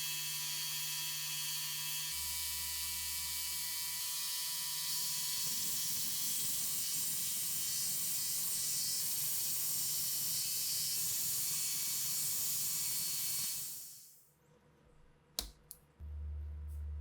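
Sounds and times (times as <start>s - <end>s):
sharp click: 15.4s - 15.9s.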